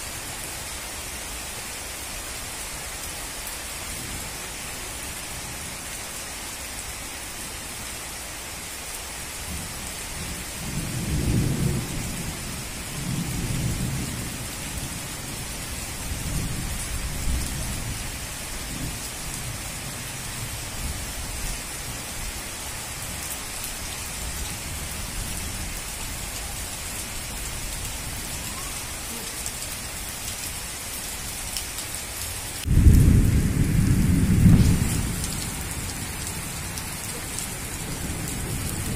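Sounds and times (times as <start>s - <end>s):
heavy rain hissing: 0.0s - 38.9s
rolling thunder rumbles: 10.2s - 15.4s, 32.6s - 38.9s.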